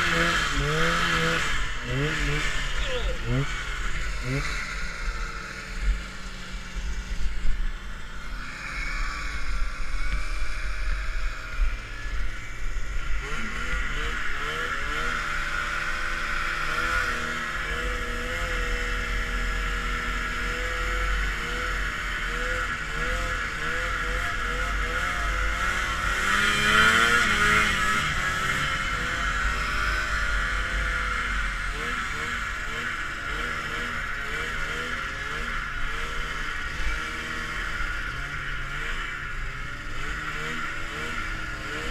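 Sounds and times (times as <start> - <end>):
snowmobile two-stroke engine: 0.0 - 41.9.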